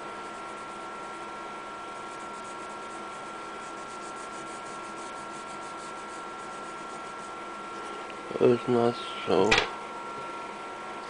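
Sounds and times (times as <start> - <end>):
thin high hum: 0.0 - 11.0
pencil scratching on paper: 0.2 - 1.2, 1.9 - 7.4.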